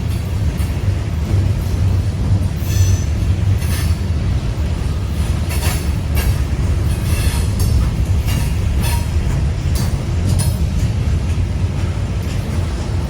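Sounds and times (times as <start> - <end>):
freight train rumble: 0.0 - 13.0
train clanks: 0.0 - 13.0.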